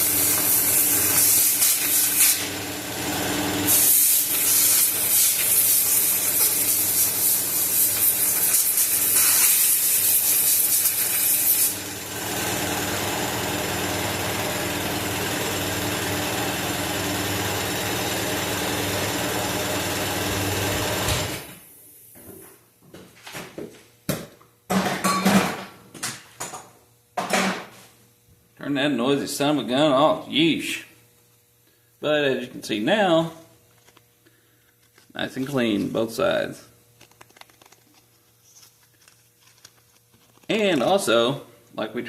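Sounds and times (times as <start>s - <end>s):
air compressor running: 0.0s - 21.8s.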